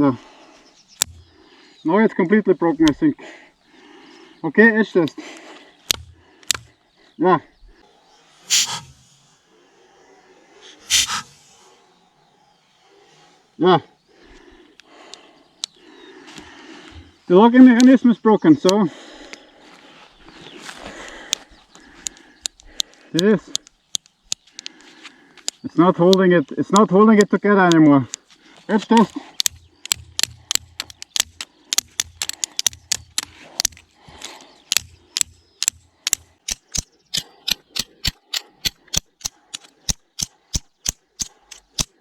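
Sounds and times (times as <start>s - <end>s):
knife blade striking hard material: 5.9s - 6.7s, 8.5s - 9.1s, 10.9s - 11.4s, 36.4s - 41.9s.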